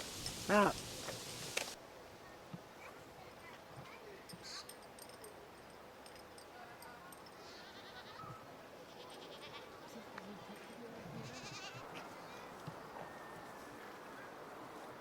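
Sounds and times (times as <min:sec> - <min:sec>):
goats bleating: 0:11.2 - 0:11.8.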